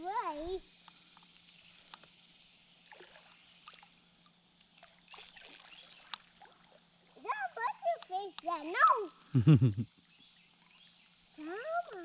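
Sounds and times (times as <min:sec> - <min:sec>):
water splashing in a shallow creek: 0:02.7 - 0:04.1, 0:04.7 - 0:07.2.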